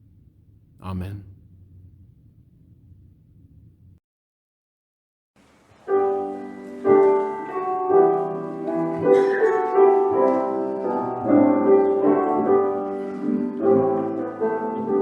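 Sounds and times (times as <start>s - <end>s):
piano playing slow hymn chords: 5.8s - 15.0s.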